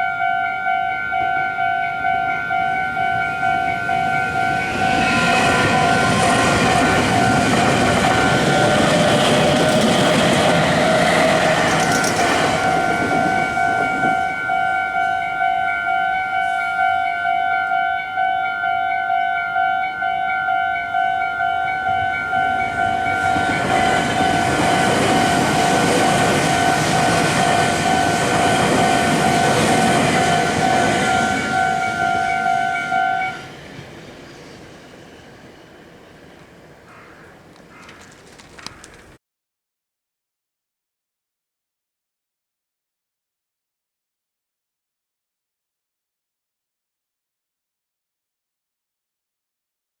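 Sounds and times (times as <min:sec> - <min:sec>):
level-crossing warning bell dings: 0:00.0 - 0:36.5
train wheels rushing: 0:04.3 - 0:14.3, 0:22.0 - 0:36.7.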